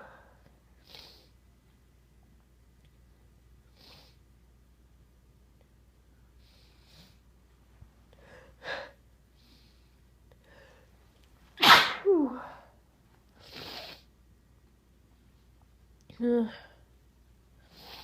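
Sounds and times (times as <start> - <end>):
person sneezing: 11.6 - 12.6.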